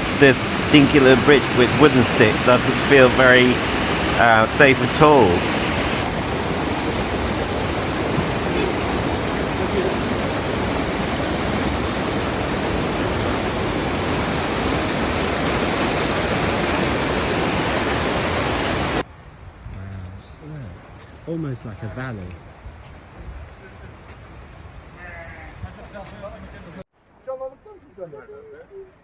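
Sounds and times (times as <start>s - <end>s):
mountain stream rushing: 0.0s - 19.1s.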